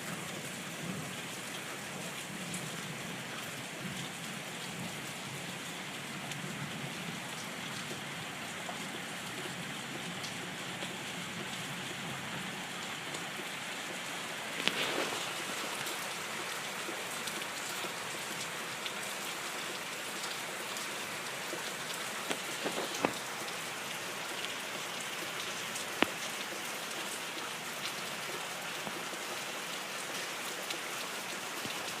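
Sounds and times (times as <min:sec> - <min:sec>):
steady rain falling: 0:00.0 - 0:32.0
sharp raindrop taps: 0:22.2 - 0:23.3.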